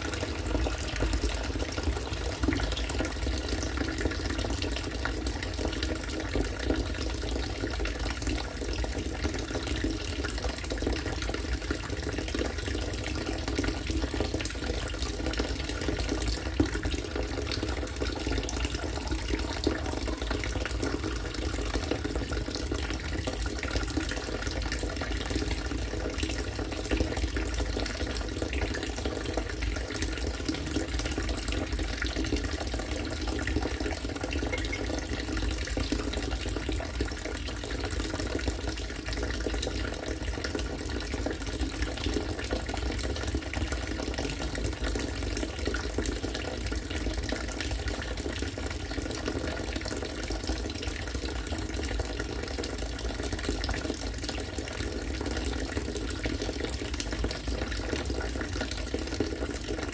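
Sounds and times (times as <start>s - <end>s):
water pouring into a tank: 0.0s - 59.9s.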